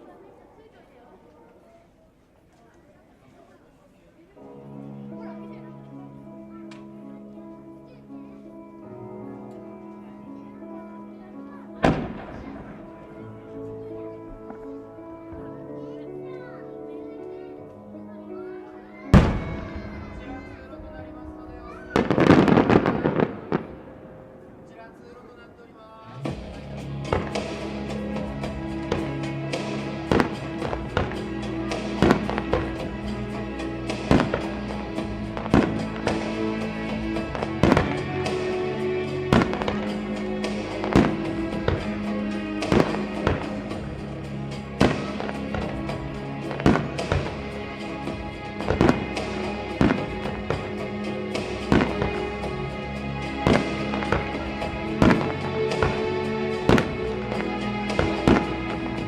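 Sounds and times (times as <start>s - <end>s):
music with held tones: 4.4s - 59.0s
fireworks bursting in sharp bangs: 11.8s - 13.2s, 19.1s - 24.0s, 26.2s - 59.0s
firework shells bursting: 39.3s - 44.1s, 44.8s - 59.0s.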